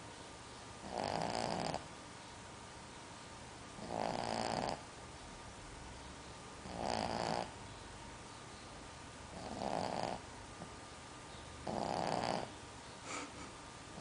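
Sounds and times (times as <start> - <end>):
dog snoring: 0.8 - 1.9, 3.8 - 4.9, 6.6 - 7.6, 9.3 - 10.3, 11.6 - 12.5.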